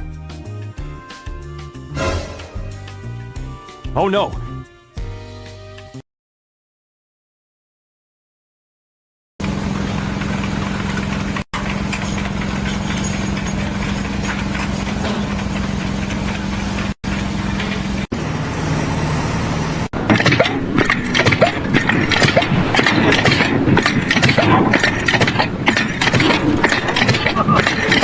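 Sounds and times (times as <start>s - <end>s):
engine running: 9.4s - 28.0s
sharp knocks and clatter: 11.6s - 18.1s, 20.0s - 28.0s.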